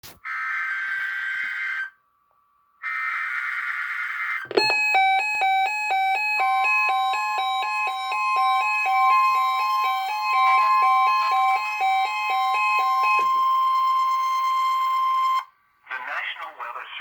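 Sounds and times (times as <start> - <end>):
stepped alarm beeps: 4.5 - 15.5.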